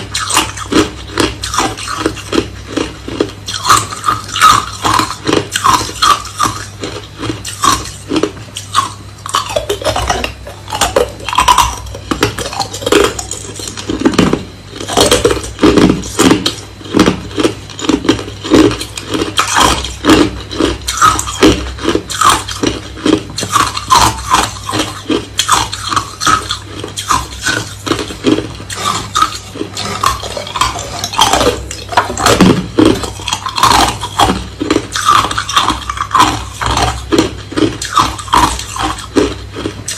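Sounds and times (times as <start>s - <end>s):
crushed ice being chewed: 0.0s - 39.9s.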